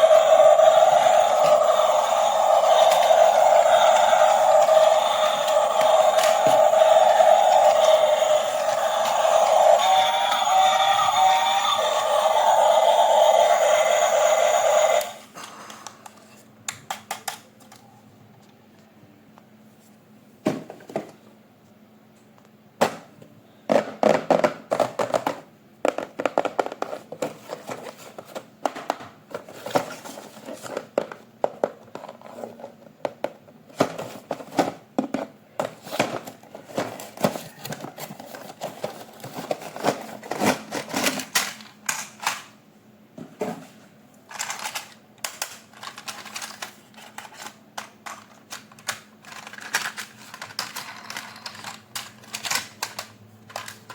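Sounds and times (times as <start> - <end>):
plastic and cardboard packaging rustling: 35.7 - 41.4.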